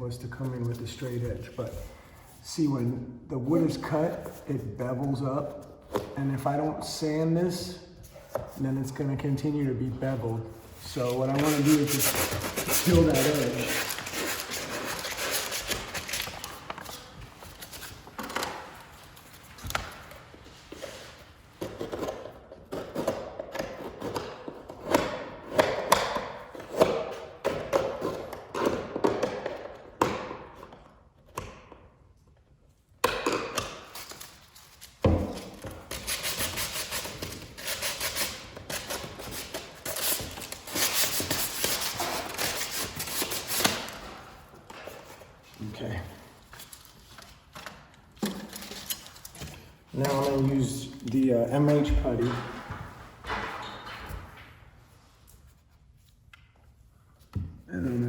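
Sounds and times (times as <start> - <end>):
sandpaper rubbing on wood: 11.2 - 15.8.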